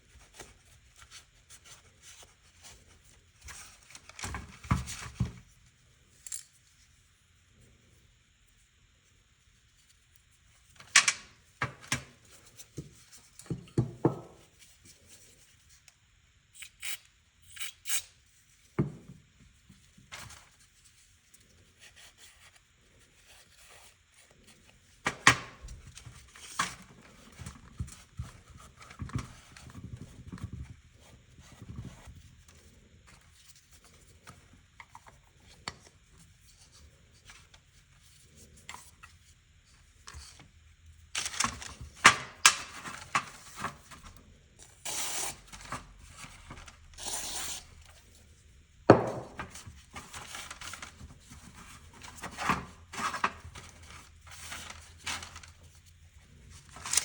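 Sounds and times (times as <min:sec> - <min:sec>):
rubbing and handling noise: 0:41.2 - 0:57.0.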